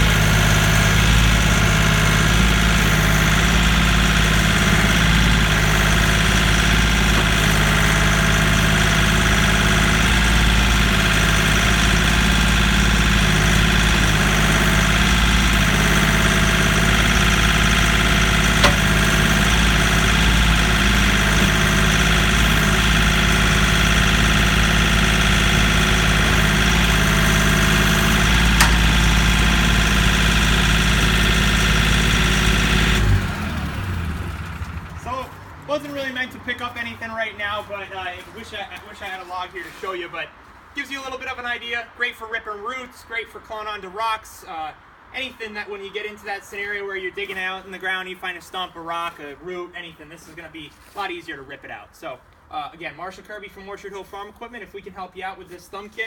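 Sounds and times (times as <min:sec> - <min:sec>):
tractor diesel engine running: 0:00.0 - 0:37.7
sharp clicks: 0:17.4 - 0:20.1, 0:26.1 - 0:31.0.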